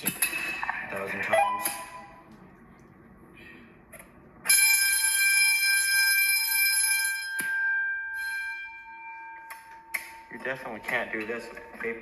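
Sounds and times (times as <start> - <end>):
fire alarm bell ringing: 4.4 - 11.9.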